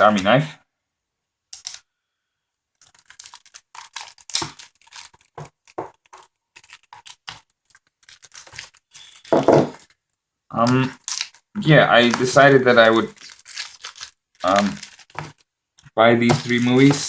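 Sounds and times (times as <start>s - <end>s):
knife tearing plastic wrap: 2.8s - 9.9s, 10.7s - 15.5s, 16.2s - 17.0s.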